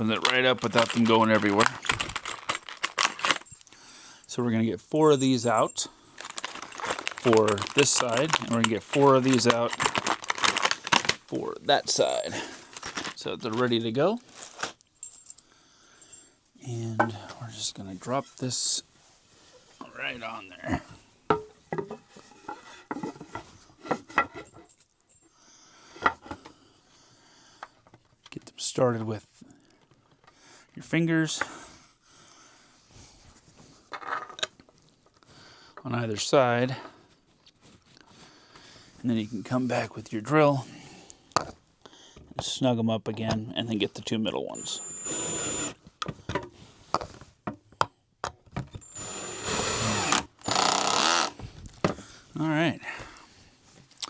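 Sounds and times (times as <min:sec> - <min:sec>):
wooden parts knocking and clicking: 0:00.0 - 0:03.6, 0:06.2 - 0:11.2
drill whining: 0:44.6 - 0:45.8, 0:48.8 - 0:51.4.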